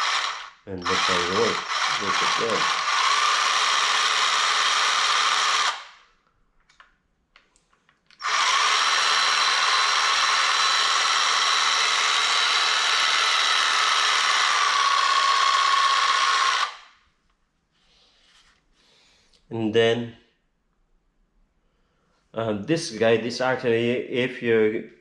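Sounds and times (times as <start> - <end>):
reciprocating saw running: 0.0 - 6.0, 8.2 - 16.9.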